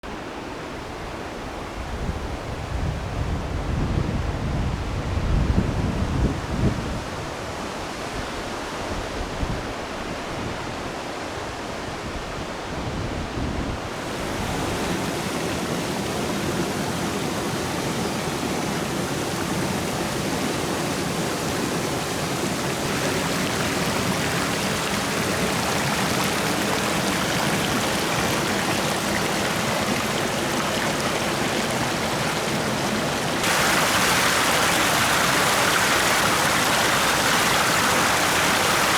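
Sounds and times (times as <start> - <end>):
wind rumbling on microphone: 1.7 - 9.8, 12.1 - 38.9
stream rushing: 13.8 - 38.9.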